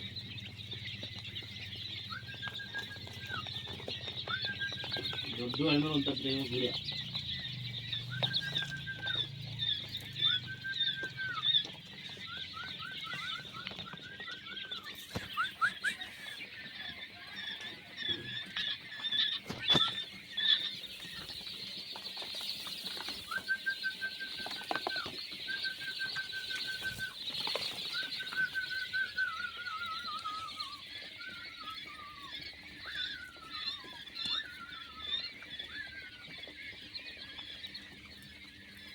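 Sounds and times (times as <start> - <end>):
quail peeps and chirps: 0.0 - 38.9
whistled quail calls: 0.0 - 38.9.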